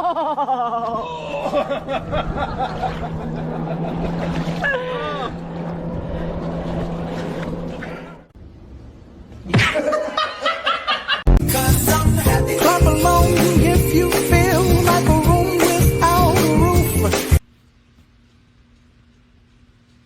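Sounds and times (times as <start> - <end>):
high whining glide: 1.0 - 8.3
motor hum: 1.0 - 8.3.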